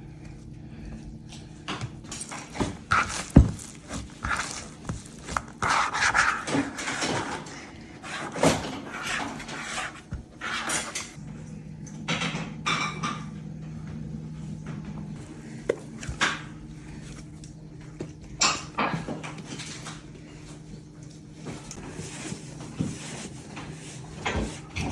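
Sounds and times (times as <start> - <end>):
dough being kneaded by hand: 0.0 - 11.2, 13.7 - 24.9
steady low hum: 0.0 - 24.9.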